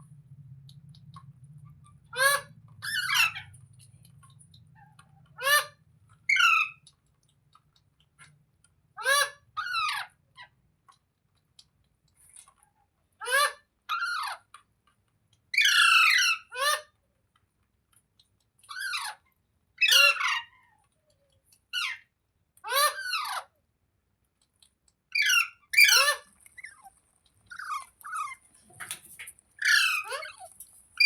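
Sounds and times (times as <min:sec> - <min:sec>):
parakeet screeching: 0:02.0 - 0:03.6, 0:04.8 - 0:06.8, 0:15.6 - 0:16.8, 0:19.8 - 0:20.6, 0:25.2 - 0:26.9, 0:27.5 - 0:28.5, 0:29.6 - 0:31.0.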